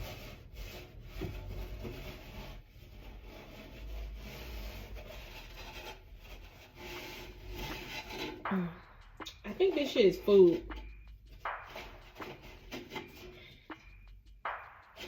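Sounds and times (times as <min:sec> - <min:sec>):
scrubbing scrape: 0:00.0 - 0:08.5.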